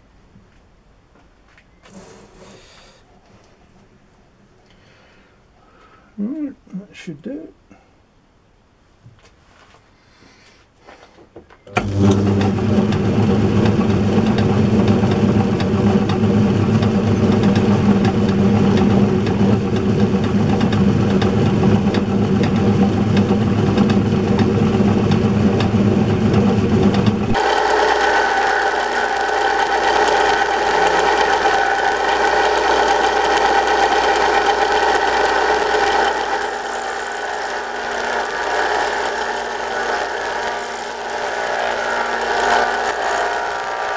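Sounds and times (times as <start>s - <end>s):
machine tool running: 11.8s - 43.9s.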